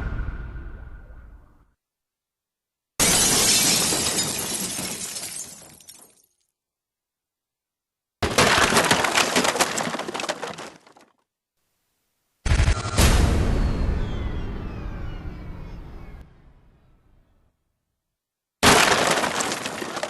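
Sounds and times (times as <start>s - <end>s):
glass smashing: 3.0s - 6.4s, 8.2s - 11.0s, 18.6s - 20.0s
glass fragments tinkling: 3.1s - 6.4s.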